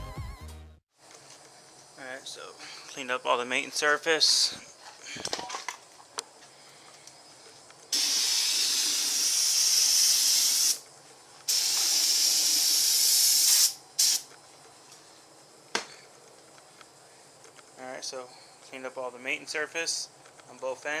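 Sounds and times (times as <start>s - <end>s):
pressurized spray hissing: 7.9s - 10.8s, 11.5s - 14.3s.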